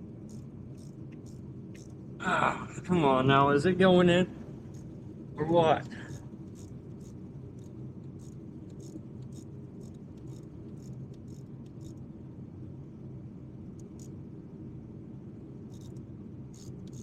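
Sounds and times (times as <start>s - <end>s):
low hum: 0.0s - 17.0s
ratchet clicks: 0.3s - 2.0s, 4.7s - 5.0s, 5.8s - 12.0s, 15.7s - 17.0s.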